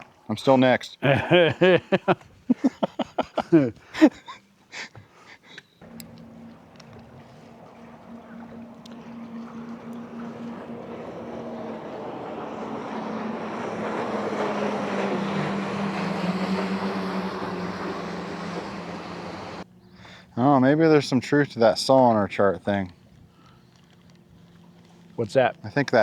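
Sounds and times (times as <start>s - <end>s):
outboard motor humming: 5.7s - 26.0s
water and wind rushing: 5.8s - 19.7s.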